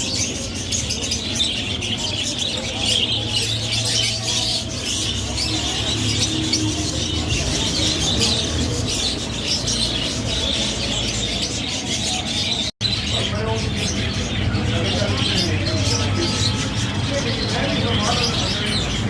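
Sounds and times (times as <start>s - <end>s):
flock of small birds chirping: 0.0s - 19.0s.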